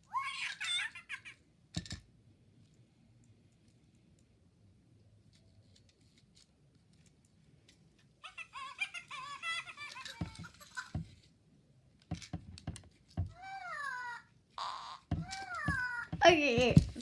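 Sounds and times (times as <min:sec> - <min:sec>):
toy electronic voice giggling: 0:00.2 - 0:01.4, 0:08.2 - 0:11.0
toy being handled knocks: 0:01.7 - 0:02.1, 0:09.8 - 0:11.3, 0:12.0 - 0:13.4, 0:15.1 - 0:17.0.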